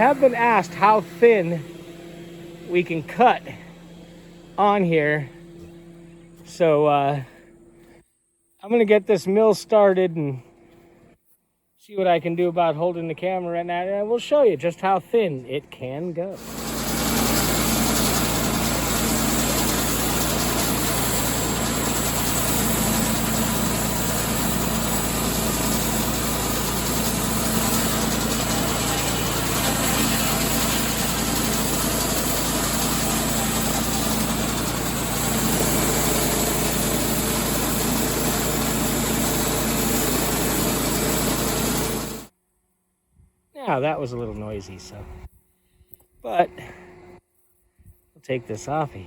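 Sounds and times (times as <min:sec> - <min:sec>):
saw blade whining through wood: 0:00.0 - 0:06.5, 0:16.4 - 0:42.3
sawmill engine hum: 0:00.0 - 0:08.0, 0:15.6 - 0:42.3.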